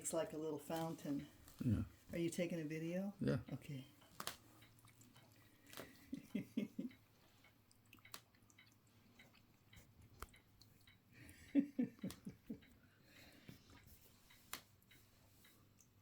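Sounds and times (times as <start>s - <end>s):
cat lapping water: 4.4s - 6.0s, 7.1s - 11.6s.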